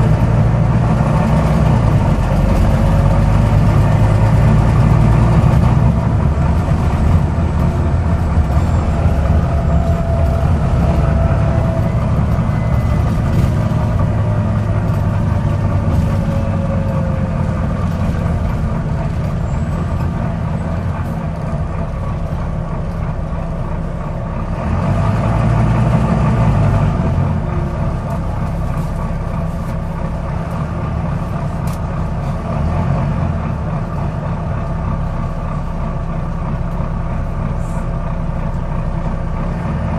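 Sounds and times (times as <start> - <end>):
bus diesel engine drone: 0.0 - 39.9.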